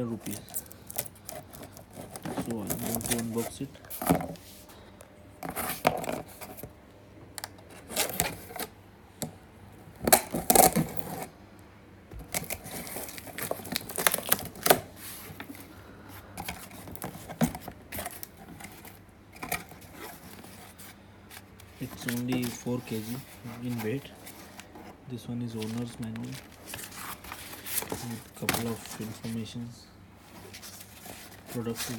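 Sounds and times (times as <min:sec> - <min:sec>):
cardboard packaging tearing and rustling: 0:00.0 - 0:04.4, 0:07.7 - 0:08.7, 0:10.1 - 0:11.3, 0:12.2 - 0:15.6, 0:25.5 - 0:29.4.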